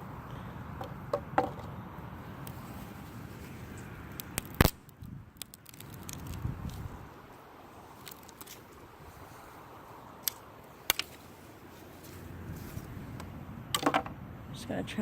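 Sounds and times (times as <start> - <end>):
dry sticks crackling and knocking: 0.8 - 1.7, 2.3 - 14.2
sticks snapping sharply: 4.1 - 6.8, 10.2 - 11.1.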